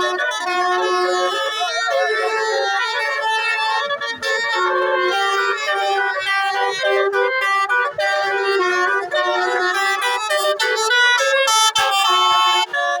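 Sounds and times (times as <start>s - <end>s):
musical air horn melody: 0.0s - 13.0s.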